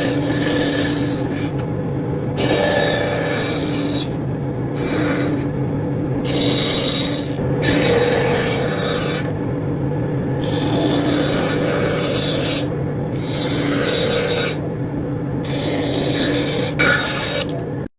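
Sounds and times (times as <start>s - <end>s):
wood rasping strokes: 0.0s - 1.6s, 4.8s - 5.5s, 6.2s - 9.3s, 10.4s - 14.6s, 15.4s - 17.6s
low rumble: 0.0s - 17.9s.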